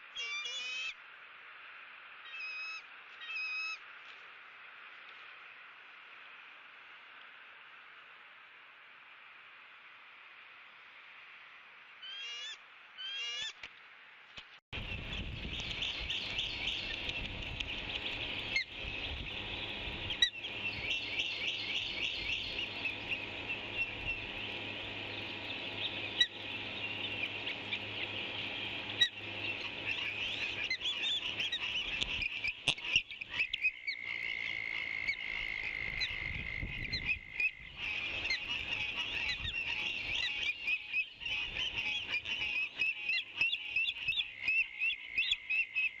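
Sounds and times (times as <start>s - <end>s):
chorus of high bird calls: 0.1s - 1.0s, 2.3s - 3.8s, 12.0s - 13.6s, 14.8s - 46.0s.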